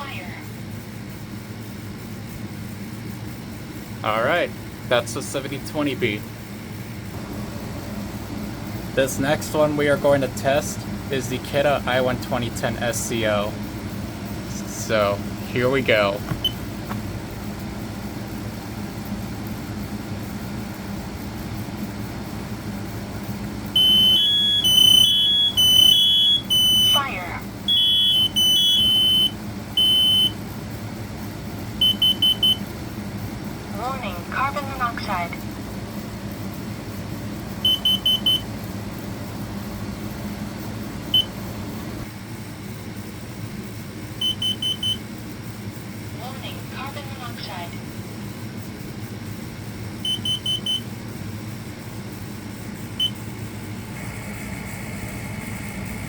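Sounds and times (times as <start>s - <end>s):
steady low hum: 0.0s - 56.0s
alarm high beeps: 23.8s - 30.4s, 31.8s - 32.6s, 37.7s - 38.4s, 44.2s - 45.0s, 50.1s - 50.8s.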